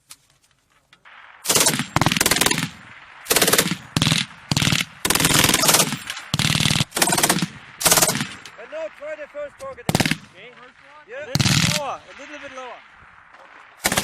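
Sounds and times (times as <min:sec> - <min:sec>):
machine gun bursts: 0:01.4 - 0:08.7, 0:09.8 - 0:12.6, 0:13.3 - 0:14.0.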